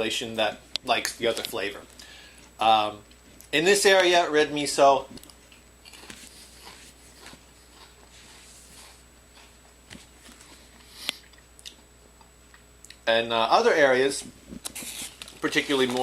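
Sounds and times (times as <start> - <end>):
person chewing: 5.1 - 13.0.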